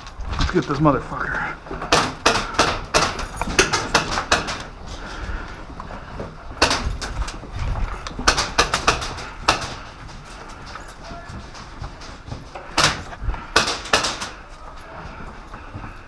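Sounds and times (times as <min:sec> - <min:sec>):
sharp irregular clicks and knocks: 0:01.7 - 0:05.0, 0:06.2 - 0:14.4.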